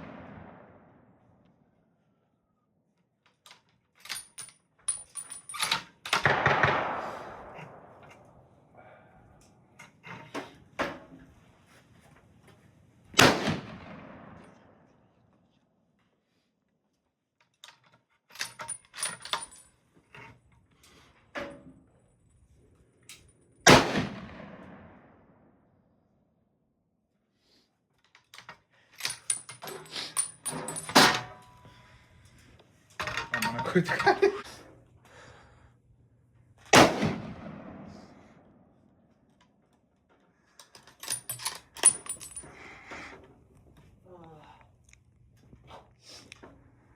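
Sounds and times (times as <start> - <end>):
metallic clicks of gun handling: 3.2 - 6.4, 17.4 - 21.7, 23.0 - 23.5, 28.0 - 34.3, 39.3 - 43.9
loud gunshot with echo: 6.3 - 7.9, 13.2 - 14.2, 23.7 - 24.8, 36.8 - 38.2.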